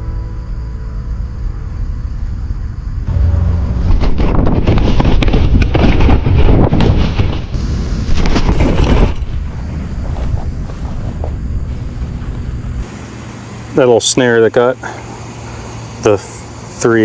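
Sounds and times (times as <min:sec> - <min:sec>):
wind buffeting microphone: 0:03.1 - 0:12.9
rapid crackling and rustling: 0:04.0 - 0:12.9.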